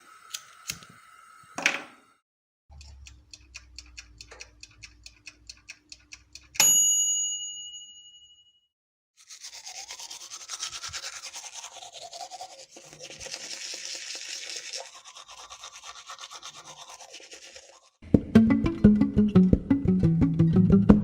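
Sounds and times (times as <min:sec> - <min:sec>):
brisk scrubbing strokes: 0:09.2 - 0:18.0.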